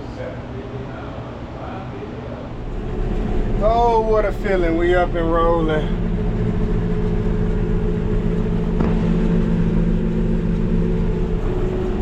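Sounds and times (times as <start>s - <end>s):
tractor engine running: 2.6s - 12.0s.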